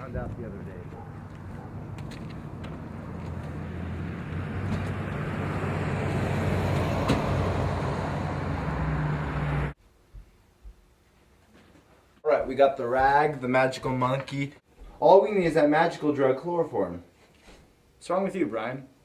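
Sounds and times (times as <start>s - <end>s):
vehicle engine and tyre rumble: 0.3s - 9.8s.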